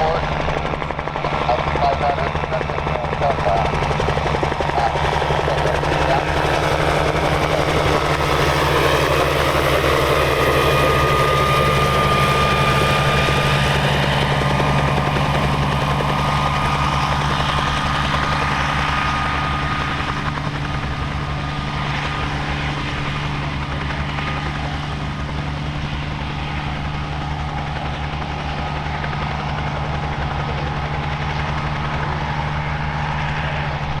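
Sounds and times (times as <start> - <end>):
piston engine drone: 0.0 - 21.4
helicopter rotor beating: 0.0 - 34.0.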